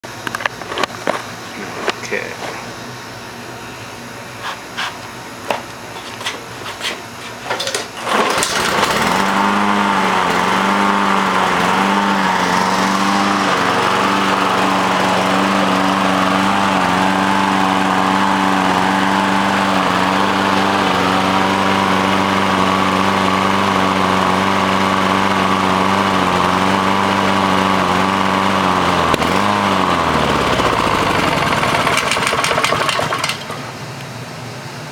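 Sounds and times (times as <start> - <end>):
lawn mower engine running: 7.5 - 34.0.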